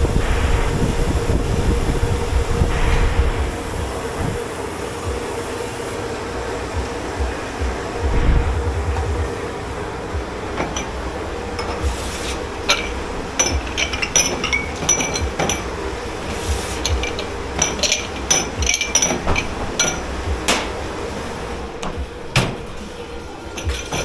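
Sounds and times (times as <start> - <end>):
steady low hum: 0.0 - 24.0
crockery and cutlery clattering: 10.2 - 24.0.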